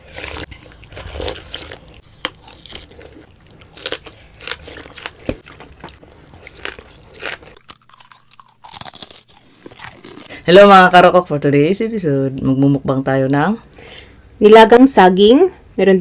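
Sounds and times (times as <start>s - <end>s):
biting and chewing: 0.0s - 10.4s.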